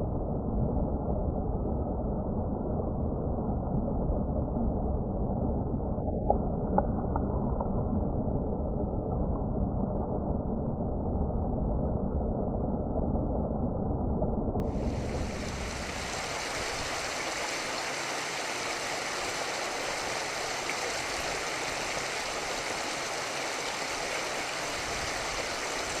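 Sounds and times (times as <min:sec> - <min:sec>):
flowing river water: 0:14.6 - 0:26.0.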